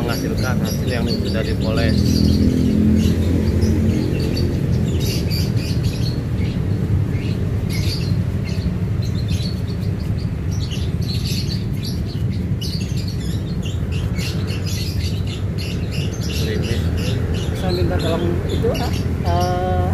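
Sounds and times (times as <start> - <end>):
small birds chirping: 0.0 - 19.9.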